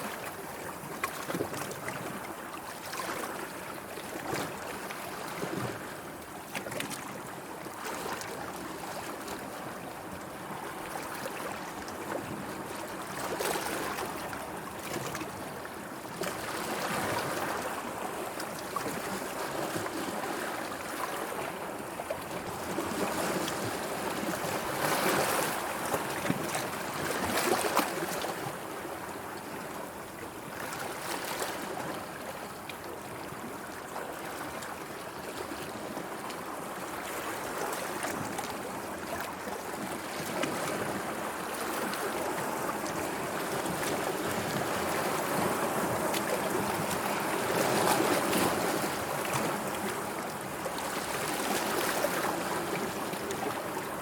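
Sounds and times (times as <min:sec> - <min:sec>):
sea water lapping: 0:33.3 - 0:54.0.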